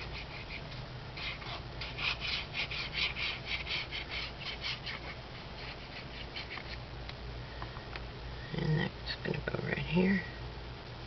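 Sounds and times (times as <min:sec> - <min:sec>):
paper being handled and rubbed: 0:00.0 - 0:06.8
low steady hum: 0:00.0 - 0:11.0.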